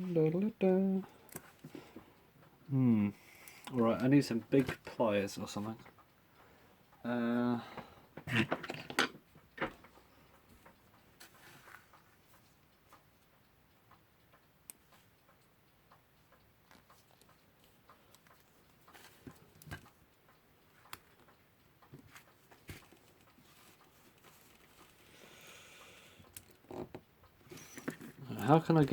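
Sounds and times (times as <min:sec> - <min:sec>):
metal clock parts clicking: 0:08.0 - 0:25.1, 0:26.2 - 0:28.9.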